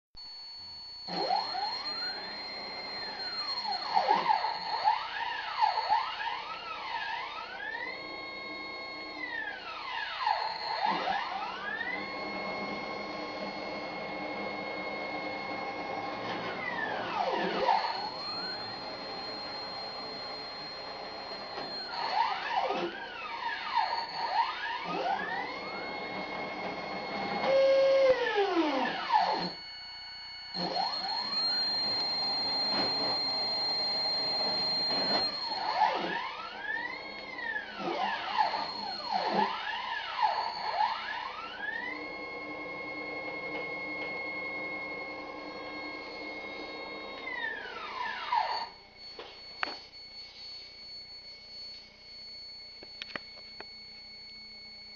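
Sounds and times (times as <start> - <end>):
stepper motors whining: 0.3 - 54.9
clicks: 52.8 - 53.8.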